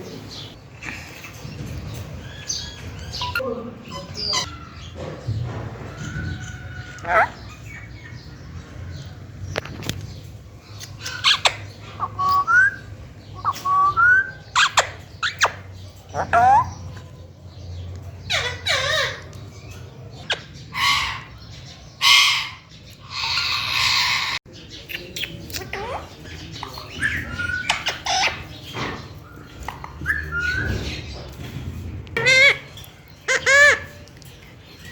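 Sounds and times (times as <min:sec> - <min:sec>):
parrot squawking: 0:06.7 - 0:08.0, 0:10.8 - 0:12.8, 0:13.4 - 0:17.0, 0:18.3 - 0:19.4, 0:32.2 - 0:34.0
parrot whistling: 0:12.0 - 0:15.4.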